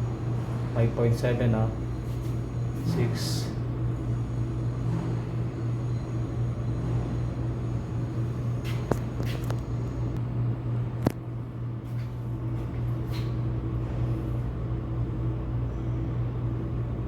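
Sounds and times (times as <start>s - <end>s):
refrigeration equipment humming: 0.0s - 17.0s.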